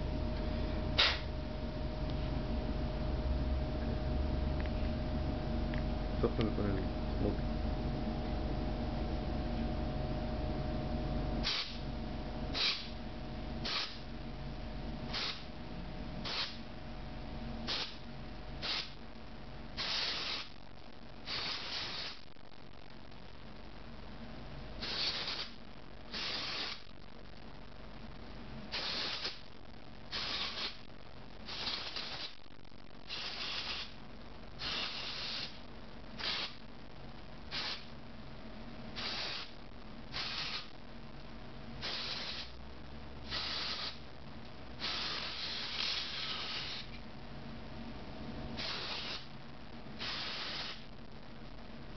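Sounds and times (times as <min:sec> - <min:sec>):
steady low hum: 0:00.0 - 0:51.9
spray can hissing: 0:01.0 - 0:01.2, 0:12.6 - 0:12.9, 0:13.6 - 0:14.0, 0:19.8 - 0:20.5, 0:21.3 - 0:22.2, 0:24.8 - 0:25.5, 0:26.1 - 0:26.8, 0:28.7 - 0:29.4, 0:30.1 - 0:30.8, 0:31.5 - 0:32.3, 0:33.1 - 0:33.9, 0:34.6 - 0:35.6, 0:36.2 - 0:36.6, 0:37.5 - 0:37.8, 0:39.0 - 0:39.5, 0:40.1 - 0:40.7, 0:41.8 - 0:42.5, 0:43.3 - 0:44.0, 0:44.8 - 0:46.9, 0:48.6 - 0:49.3, 0:50.0 - 0:50.8.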